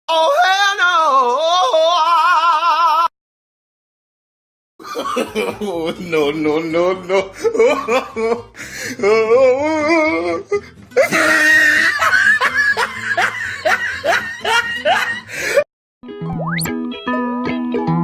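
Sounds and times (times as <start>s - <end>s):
burst of laughter: 11.0s - 15.6s
plucked-string music: 16.1s - 18.0s.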